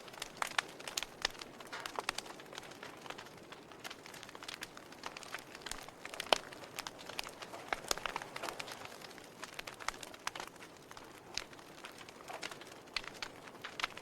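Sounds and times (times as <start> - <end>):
wood fire crackling and popping: 0.0 - 14.0.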